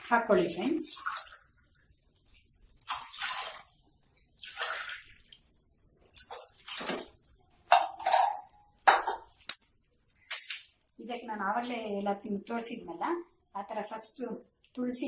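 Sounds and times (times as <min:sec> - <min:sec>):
water pouring into a pot: 0:02.5 - 0:08.4
vessels clinking: 0:06.0 - 0:13.0.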